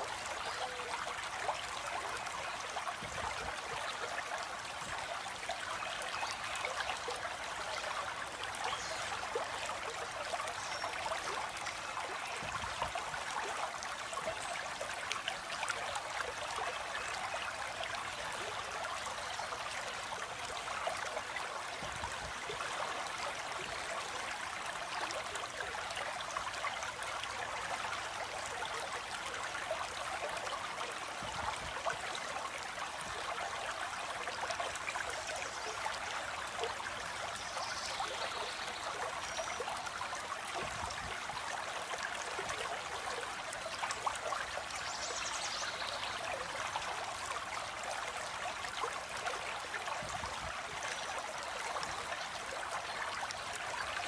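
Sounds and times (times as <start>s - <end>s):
stream water flowing: 0.0s - 54.0s.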